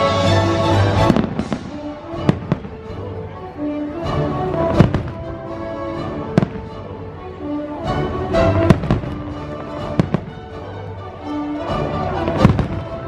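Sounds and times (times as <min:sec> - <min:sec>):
loud show music: 0:00.0 - 0:13.0
fireworks bangs: 0:00.9 - 0:03.0, 0:04.4 - 0:05.4, 0:06.4 - 0:06.8, 0:08.6 - 0:10.5, 0:12.1 - 0:13.0.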